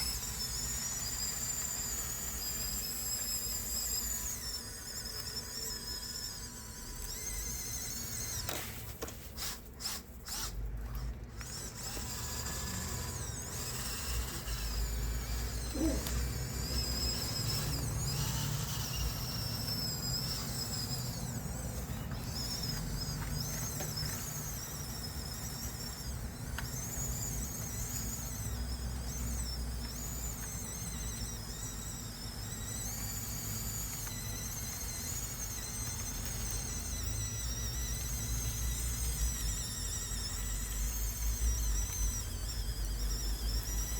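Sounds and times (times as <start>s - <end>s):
electric toy motors whining: 0.0s - 43.9s.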